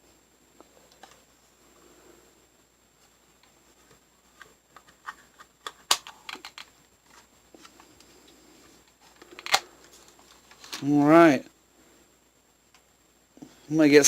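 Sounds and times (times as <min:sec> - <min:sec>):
plastic toy clicks and knocks: 0:04.8 - 0:06.7.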